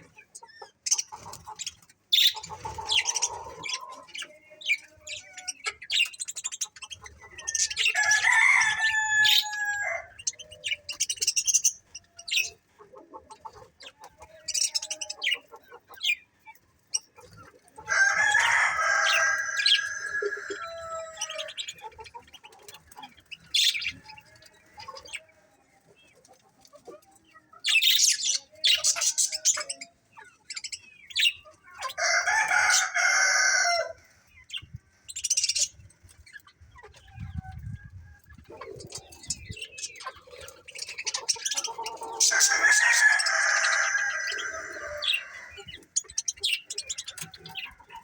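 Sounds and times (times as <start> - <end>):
budgies chirping: 0.0 - 48.0
rooster crowing: 7.9 - 10.2, 17.9 - 21.4, 32.0 - 34.0, 42.2 - 45.5.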